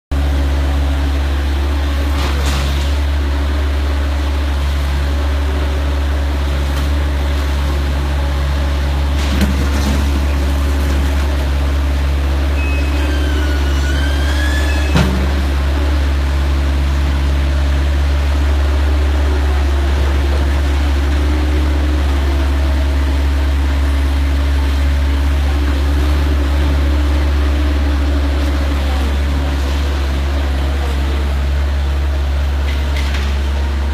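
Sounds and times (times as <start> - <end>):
deep hydraulic hum: 0.1 - 33.9.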